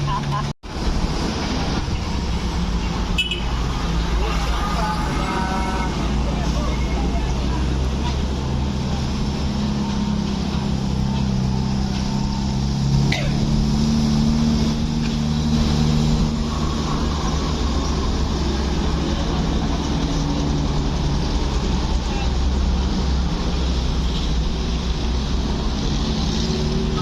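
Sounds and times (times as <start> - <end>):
heavy vehicle engine running: 0.0 - 27.0.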